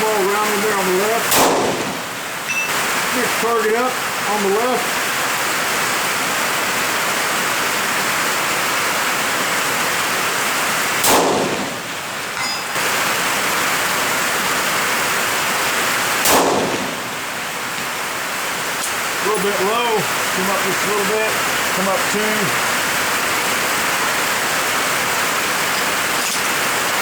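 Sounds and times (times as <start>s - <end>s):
rain drumming on a tin roof: 0.0s - 27.0s
rifle shots with echo: 1.2s - 2.8s, 11.0s - 12.0s, 16.2s - 18.0s.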